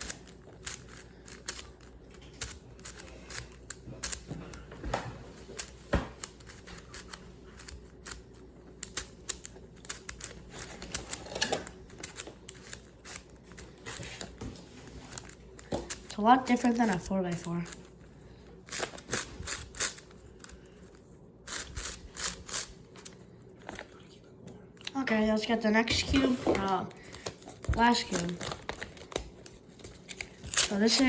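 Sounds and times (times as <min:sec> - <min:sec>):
speed cube clicking as layers turn: 0:00.0 - 0:04.3, 0:05.4 - 0:14.3, 0:18.7 - 0:20.6, 0:21.5 - 0:22.7.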